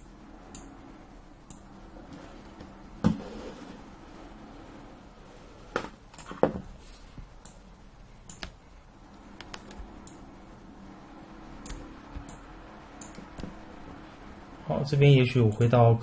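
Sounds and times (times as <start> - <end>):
faint steady hum: 0.0 - 16.0
mouse and keyboard clicks: 9.4 - 10.2.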